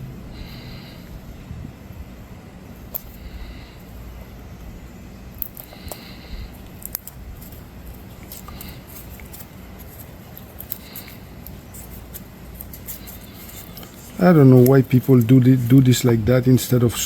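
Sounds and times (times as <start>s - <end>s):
low steady hum: 0.0s - 17.0s
light clicks of small parts: 5.4s - 14.0s
rustling of hands handling wires: 5.4s - 17.0s.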